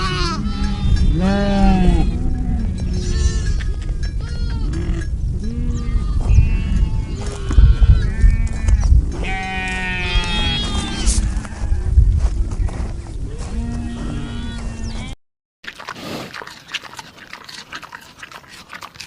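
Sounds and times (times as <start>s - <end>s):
flock of livestock bleating: 0.0s - 11.8s, 12.6s - 15.2s
low rumble: 0.5s - 4.1s, 10.2s - 15.2s.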